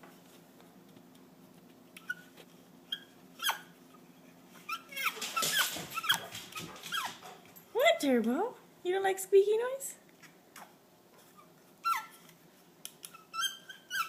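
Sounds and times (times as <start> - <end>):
squeaky toy squeaking: 2.9 - 3.7, 11.8 - 12.2, 13.1 - 14.0.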